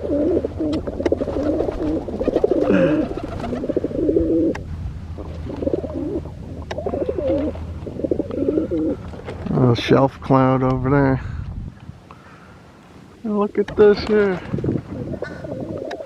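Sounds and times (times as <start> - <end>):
pigeons cooing: 0.0 - 9.2, 14.9 - 16.0.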